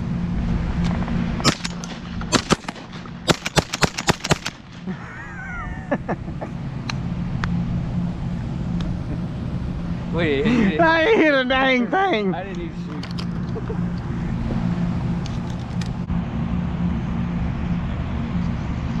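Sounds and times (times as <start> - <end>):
steady low hum: 0.0 - 19.0
shotgun shots: 1.4 - 4.9.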